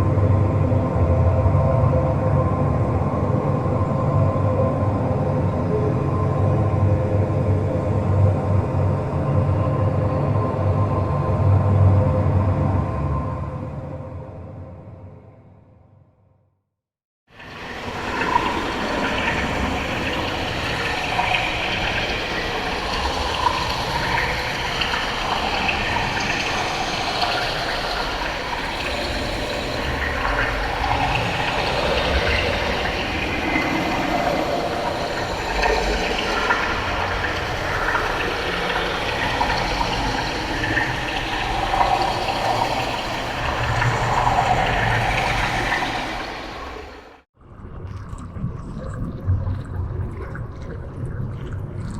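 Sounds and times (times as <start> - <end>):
water rushing and bubbling: 17.4 - 51.9.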